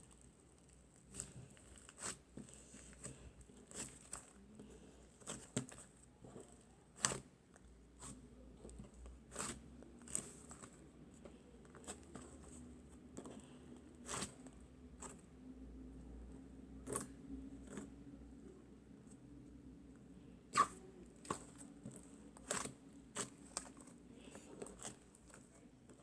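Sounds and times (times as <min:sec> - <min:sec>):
slime squished by hand: 0:20.5 - 0:26.0.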